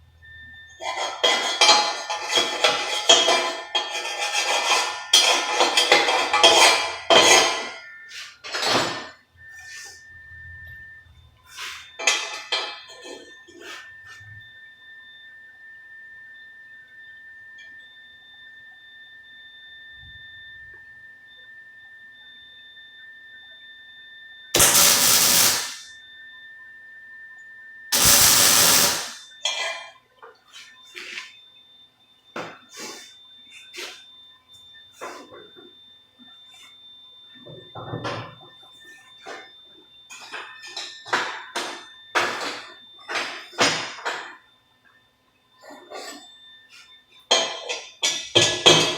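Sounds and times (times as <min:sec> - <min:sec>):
angle grinder grinding steel: 0:24.6 - 0:25.8, 0:28.0 - 0:29.2
grinder high whine spinning free: 0:24.6 - 0:25.8, 0:28.0 - 0:29.2
welding arc hiss: 0:24.6 - 0:25.9, 0:28.0 - 0:29.2.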